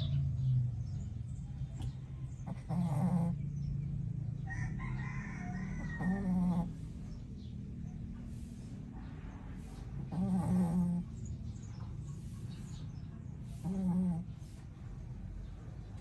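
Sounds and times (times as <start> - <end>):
pet snoring: 1.8 - 3.6, 5.2 - 16.0.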